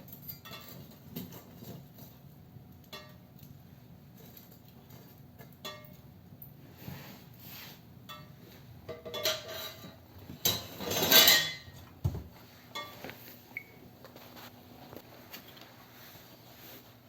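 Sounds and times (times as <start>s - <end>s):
metal clinks and clanks: 0.0s - 3.6s.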